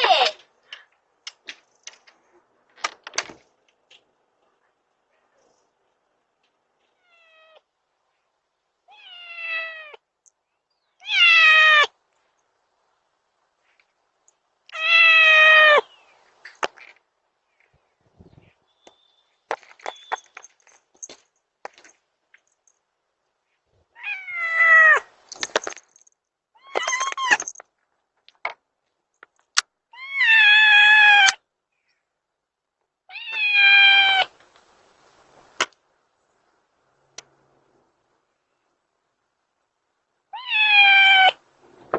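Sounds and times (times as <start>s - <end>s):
cat meowing: 8.9s - 10.0s, 24.0s - 25.1s, 33.1s - 34.3s, 40.4s - 41.4s.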